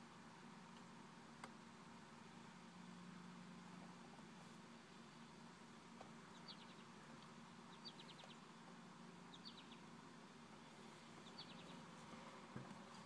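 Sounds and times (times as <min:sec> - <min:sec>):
low steady hum: 0:00.0 - 0:13.0
bird chirping with trill: 0:06.3 - 0:06.9, 0:07.7 - 0:08.5, 0:09.3 - 0:09.9, 0:11.2 - 0:11.9.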